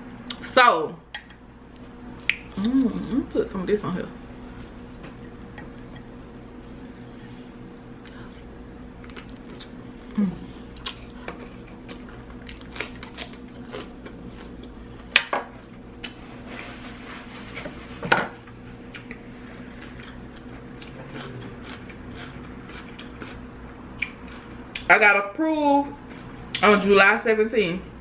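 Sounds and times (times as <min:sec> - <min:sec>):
faint steady hum: 0:00.0 - 0:28.0
biting and chewing: 0:18.9 - 0:24.9.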